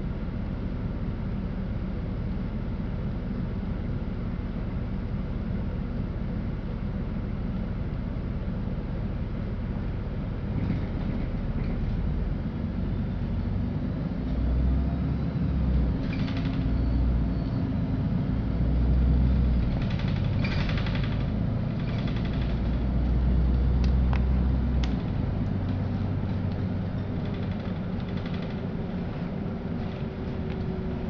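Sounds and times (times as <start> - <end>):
bus engine rumble: 0.0 - 31.0
road noise: 6.2 - 31.0
sharp clicks and rattles: 19.6 - 23.1, 23.8 - 29.2.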